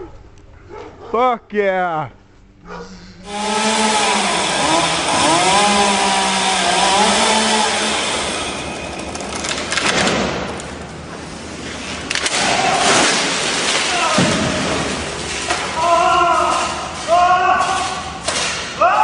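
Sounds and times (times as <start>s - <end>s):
chainsaw revving: 3.2s - 9.6s
sharp cracks: 3.3s - 10.8s, 12.0s - 19.0s.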